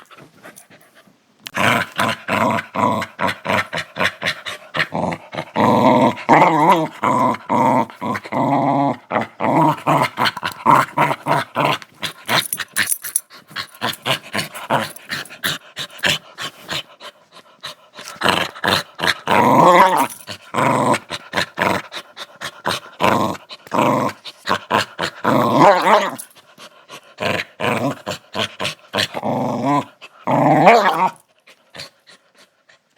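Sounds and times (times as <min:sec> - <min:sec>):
small dog growling: 0:01.5 - 0:12.8, 0:13.6 - 0:16.9, 0:18.0 - 0:26.3.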